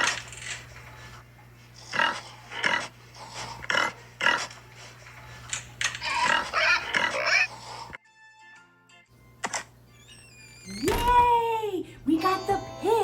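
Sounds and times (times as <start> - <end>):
pig grunting: 1.8 - 4.5, 6.0 - 7.6.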